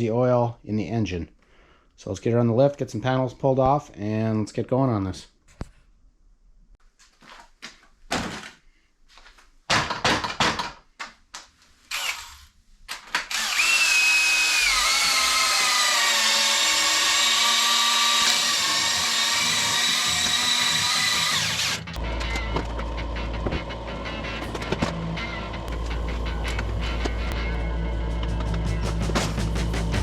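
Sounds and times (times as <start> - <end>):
electric motor running: 13.3 - 27.7.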